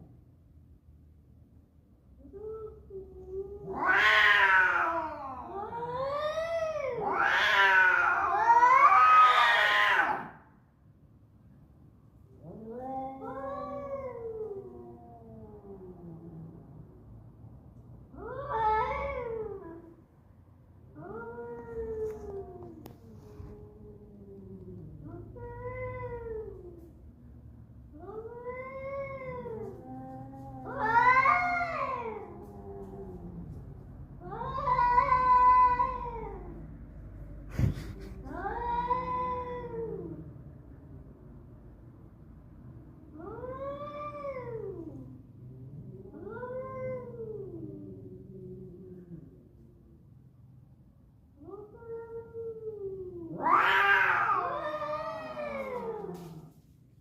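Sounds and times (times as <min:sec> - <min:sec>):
cats yowling: 0:02.3 - 0:10.4, 0:12.5 - 0:16.5, 0:18.1 - 0:19.9, 0:28.0 - 0:33.6, 0:34.2 - 0:36.6, 0:37.5 - 0:40.2, 0:43.1 - 0:45.1, 0:45.9 - 0:49.3, 0:51.4 - 0:56.6.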